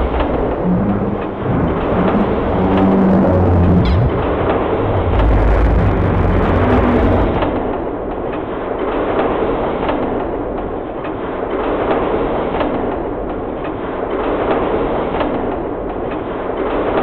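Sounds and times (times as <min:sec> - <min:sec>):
deep rumble: 0:00.0 - 0:07.9.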